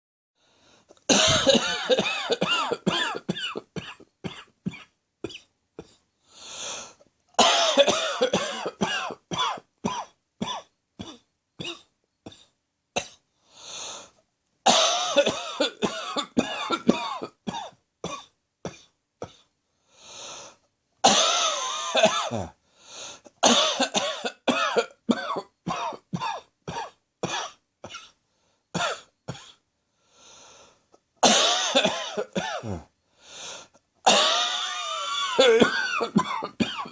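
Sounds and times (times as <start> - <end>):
drawn-in breath: 0.4 - 1.0, 6.2 - 7.1, 13.3 - 14.2, 19.7 - 20.7, 22.6 - 23.4, 29.8 - 31.0, 32.6 - 33.8
person coughing: 1.1 - 6.0, 7.4 - 13.2, 14.7 - 19.5, 21.0 - 22.6, 23.4 - 28.2, 31.2 - 32.9, 34.1 - 36.9.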